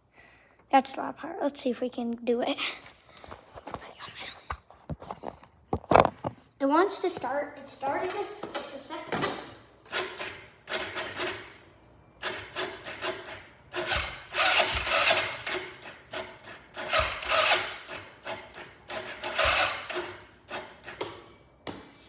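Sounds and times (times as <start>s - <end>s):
electric starter cranking engine: 9.3s - 22.0s.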